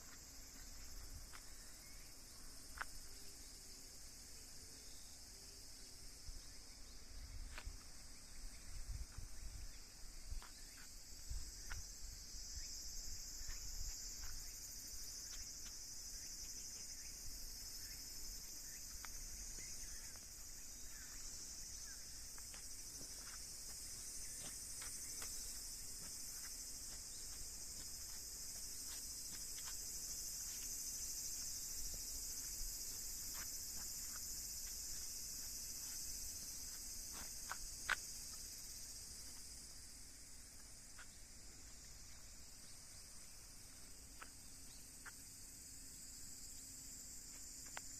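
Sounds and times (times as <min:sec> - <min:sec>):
high-pitched insect chorus: 0:00.0 - 0:47.9.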